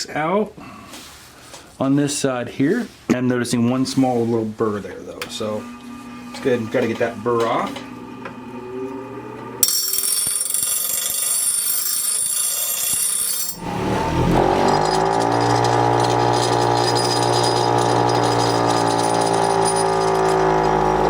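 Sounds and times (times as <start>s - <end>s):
grinder motor whine and hum: 5.2s - 9.6s, 13.6s - 21.0s.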